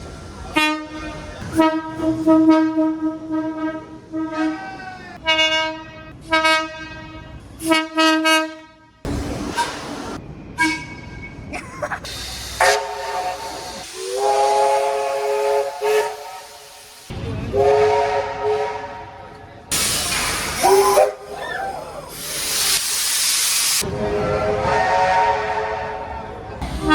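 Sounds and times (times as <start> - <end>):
train horn toots: 0.5 - 9.0, 10.6 - 11.4, 12.6 - 16.6, 17.5 - 19.3, 23.9 - 26.9
steam hissing: 12.0 - 17.8, 19.7 - 23.9.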